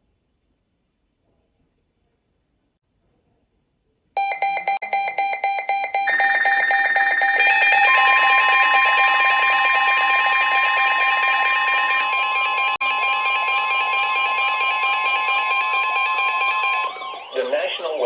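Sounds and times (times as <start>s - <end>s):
fast pulsing alert beep: 4.2s - 17.4s
sustained alert tones: 4.2s - 17.6s.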